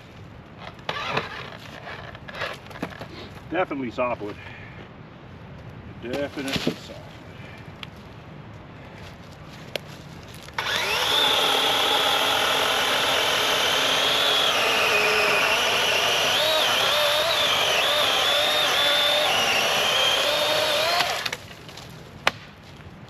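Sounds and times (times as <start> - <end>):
electric chainsaw whining: 10.6 - 21.4.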